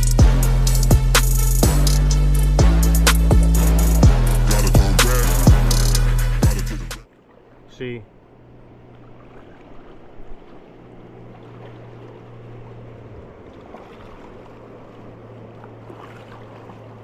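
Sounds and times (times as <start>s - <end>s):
river water rushing: 7.0s - 17.0s.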